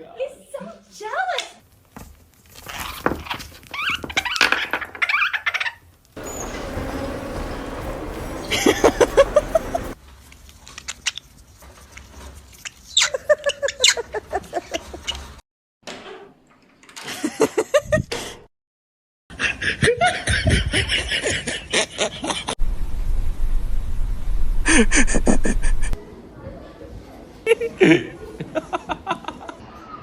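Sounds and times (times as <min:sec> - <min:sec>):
person laughing: 0:24.7 - 0:26.0.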